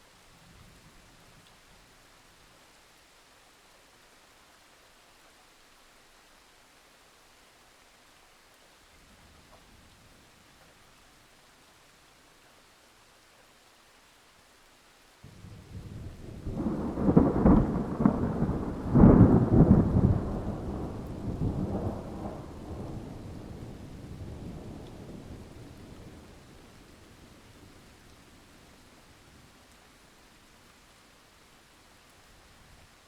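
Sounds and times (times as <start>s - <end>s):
faint rain hiss: 0.0s - 33.0s
thunder rumbling: 15.3s - 27.2s.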